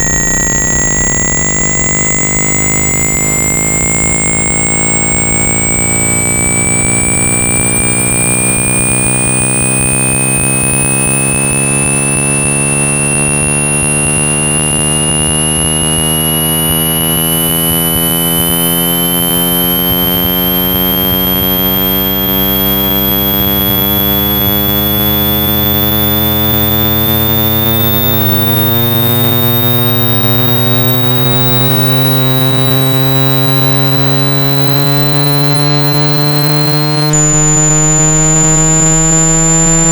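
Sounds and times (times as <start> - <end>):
rising synthesized tones: 0.0 - 39.9
steady low hum: 0.0 - 39.9
thin high whistle climbing: 0.0 - 39.9.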